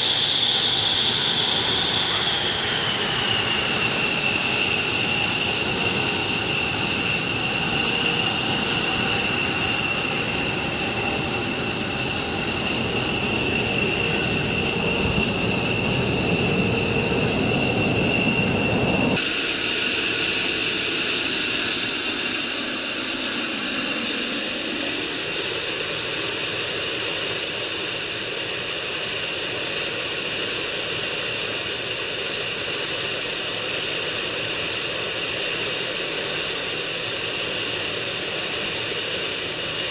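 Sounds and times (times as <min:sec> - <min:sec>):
continuous rush: 0:00.0 - 0:28.4
jet engine whine: 0:00.0 - 0:39.9.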